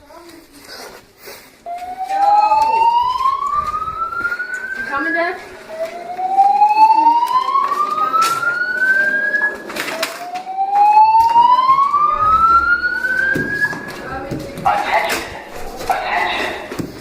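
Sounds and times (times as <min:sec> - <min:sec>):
fire alarm rising whoop tone: 0:01.7 - 0:14.0.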